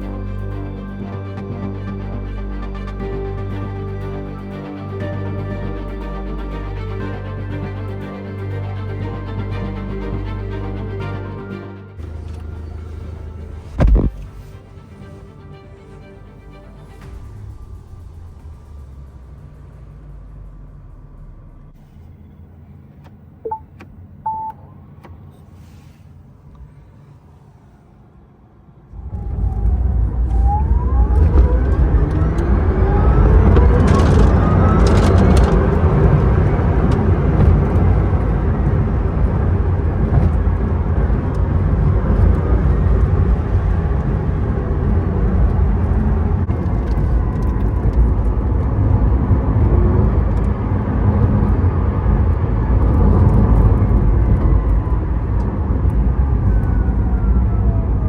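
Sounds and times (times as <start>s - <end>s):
tyre and wind noise rumble: 12.0s - 15.0s, 28.9s - 58.0s
short beeps: 23.4s - 23.7s, 24.3s - 24.8s.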